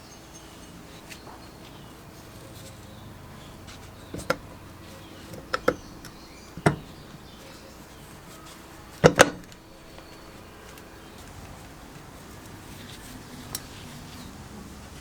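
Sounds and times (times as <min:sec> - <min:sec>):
tools knocking on workbench: 0:04.2 - 0:04.4, 0:06.6 - 0:07.2, 0:09.0 - 0:10.1.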